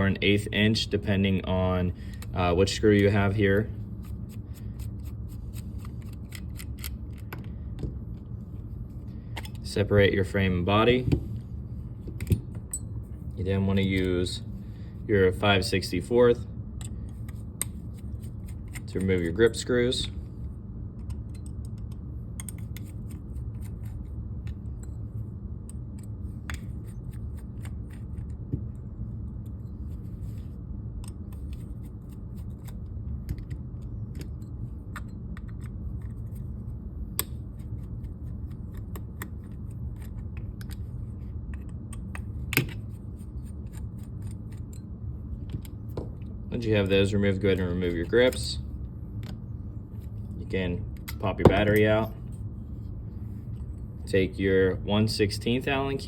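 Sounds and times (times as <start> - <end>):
low hum: 0.0 - 56.0.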